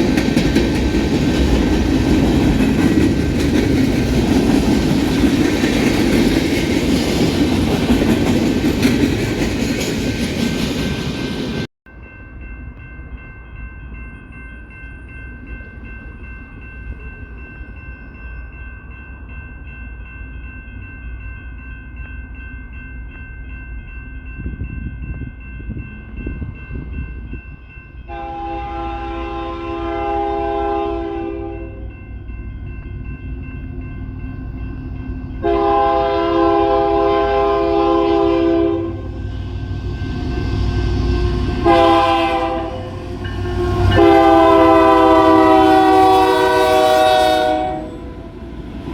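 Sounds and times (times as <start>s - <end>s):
train wheels rumbling: 0.0s - 11.7s, 24.3s - 48.9s
locomotive horn blast: 28.1s - 31.8s, 35.4s - 39.2s, 40.9s - 48.5s.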